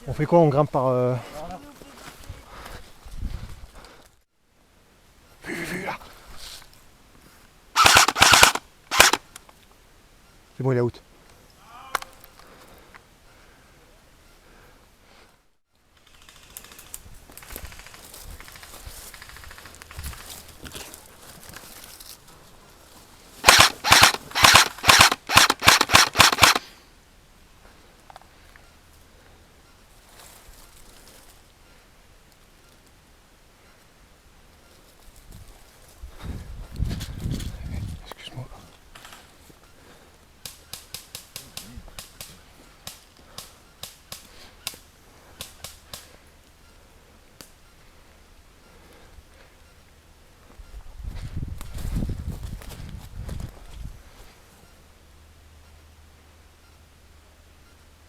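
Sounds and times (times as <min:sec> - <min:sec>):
airsoft rifle bursts: 0:07.8 - 0:09.2, 0:23.4 - 0:26.7.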